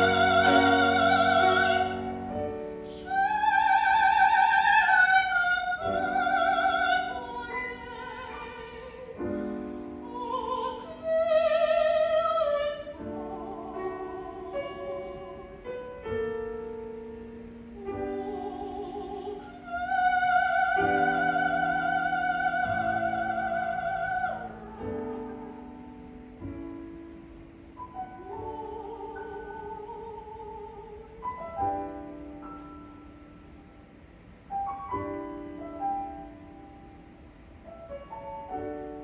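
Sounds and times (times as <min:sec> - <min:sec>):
soprano singing with vibrato: 0:00.0 - 0:17.0, 0:17.8 - 0:26.9, 0:27.8 - 0:32.9
piano accompaniment: 0:00.0 - 0:39.0.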